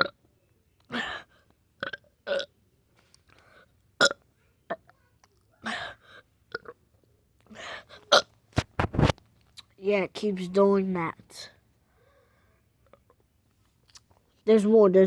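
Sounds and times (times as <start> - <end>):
person burping: 0.9 - 2.5, 4.0 - 4.2.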